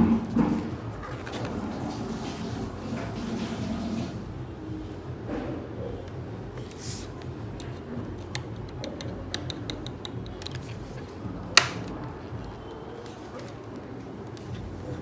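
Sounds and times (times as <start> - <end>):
clicks on laptop hardware: 8.3 - 10.8, 11.5 - 12.1.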